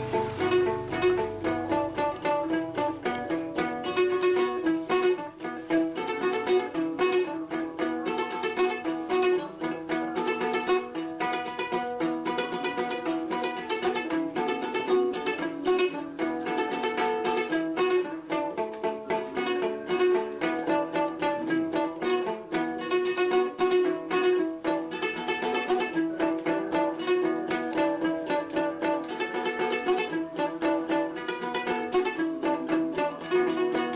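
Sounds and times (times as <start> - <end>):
quickly plucked strings music: 0.0 - 33.9.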